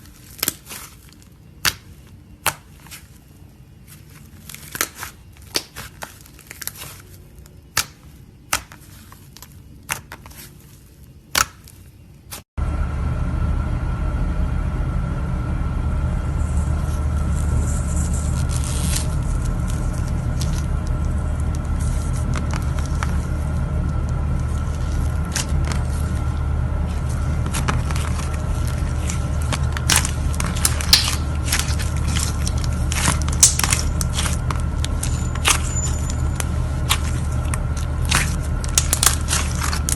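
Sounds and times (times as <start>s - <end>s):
steady low hum: 12.0s - 39.9s
slime crackling and popping: 27.3s - 35.7s.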